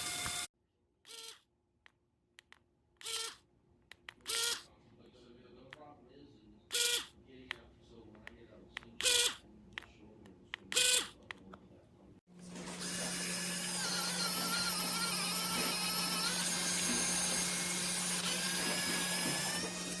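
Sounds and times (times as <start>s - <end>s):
electric mini drill whining: 0.0s - 0.5s, 1.1s - 1.4s, 3.0s - 3.4s, 4.3s - 4.6s, 6.7s - 7.1s, 12.6s - 20.0s.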